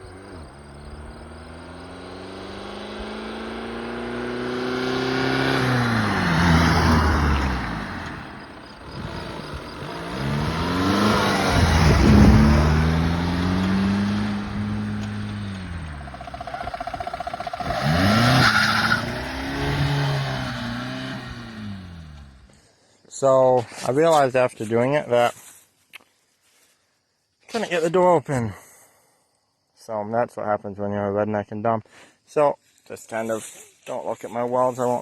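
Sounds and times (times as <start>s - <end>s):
car engine revving: 0.0s - 22.5s.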